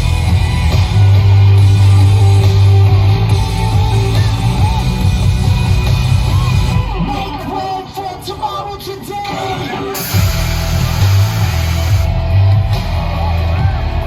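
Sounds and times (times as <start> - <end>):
loud rock music: 0.0 - 14.0.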